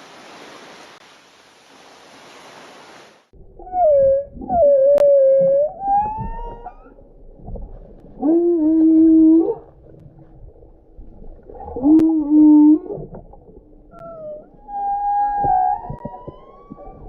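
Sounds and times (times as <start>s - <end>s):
whale calls moaning: 3.5s - 7.0s, 8.2s - 9.7s, 11.6s - 13.1s, 13.9s - 17.0s.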